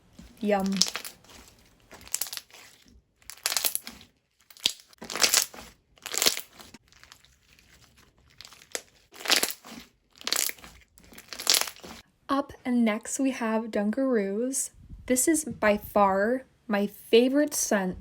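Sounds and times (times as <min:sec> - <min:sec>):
foam-bead slime crunching: 0:00.0 - 0:12.0.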